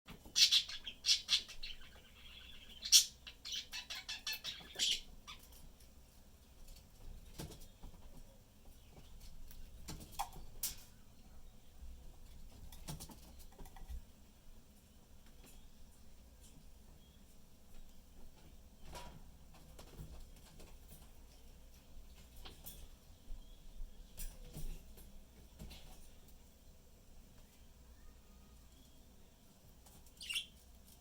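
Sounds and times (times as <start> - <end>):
budgies chirping: 0.2 - 5.6, 30.0 - 30.6.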